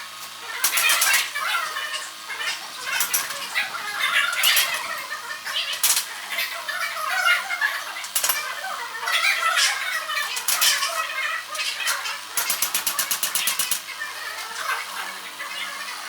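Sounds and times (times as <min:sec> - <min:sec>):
rapid rattle: 0:00.6 - 0:01.4, 0:02.9 - 0:05.0, 0:08.1 - 0:08.6, 0:10.3 - 0:11.0, 0:12.3 - 0:13.9.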